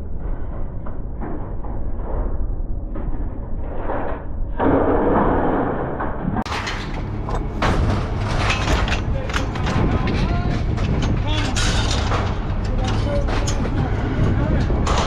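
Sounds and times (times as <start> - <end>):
scrap metal clanking: 6.5 - 15.0.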